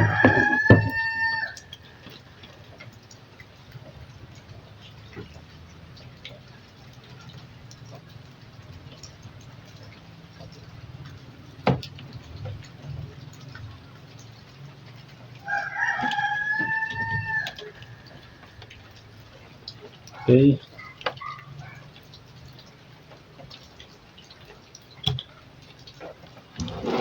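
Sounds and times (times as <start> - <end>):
rooster crowing: 0.0 - 1.7, 15.4 - 17.9.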